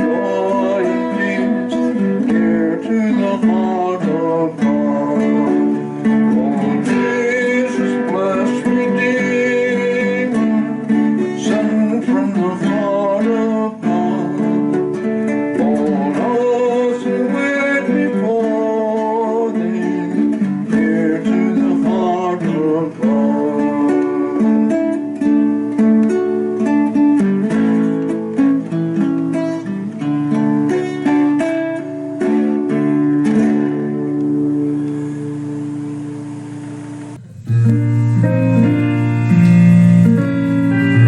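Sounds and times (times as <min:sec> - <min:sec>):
person singing: 0:00.0 - 0:14.8, 0:15.5 - 0:24.4, 0:37.2 - 0:41.0
acoustic guitar chords: 0:00.0 - 0:41.0.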